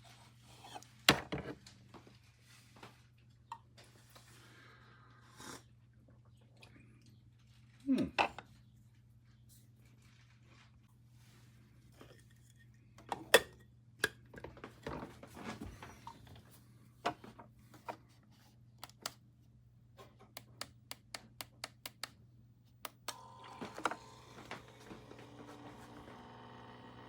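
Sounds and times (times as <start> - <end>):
clicks and knocks of coffee maker: 22.9 - 26.4
machine hum: 23.0 - 27.0.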